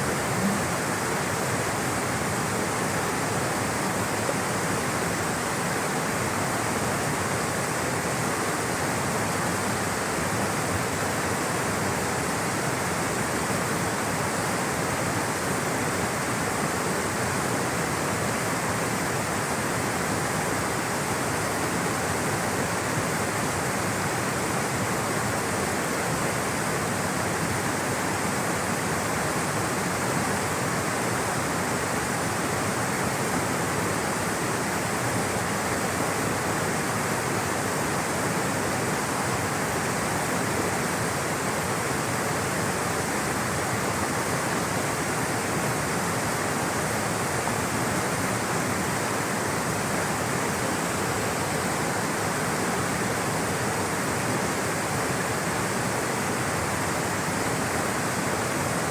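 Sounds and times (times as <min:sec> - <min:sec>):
water rushing: 0:00.0 - 0:58.9.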